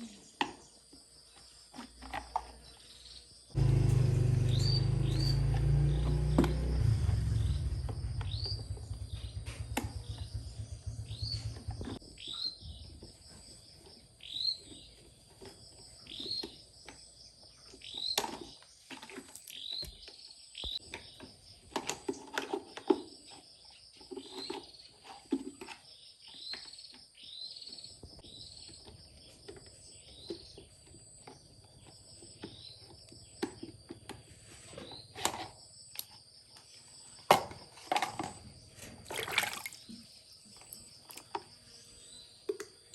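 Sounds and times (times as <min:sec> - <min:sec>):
bird chirping: 0:02.5 - 0:34.1
low rumble: 0:06.9 - 0:11.9.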